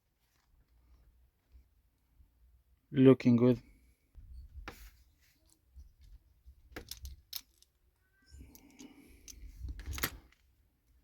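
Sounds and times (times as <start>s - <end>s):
toy train parts clicking: 6.8s - 7.7s, 8.4s - 10.2s.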